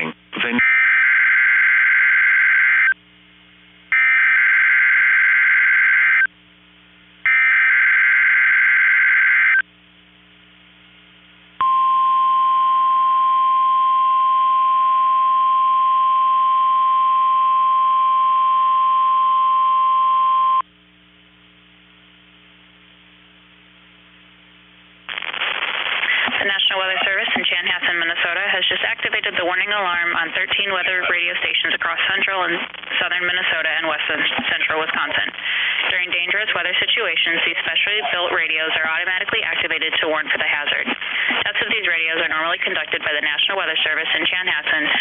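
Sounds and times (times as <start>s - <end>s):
steady alarm tone: 3.9s - 6.3s, 7.3s - 9.6s.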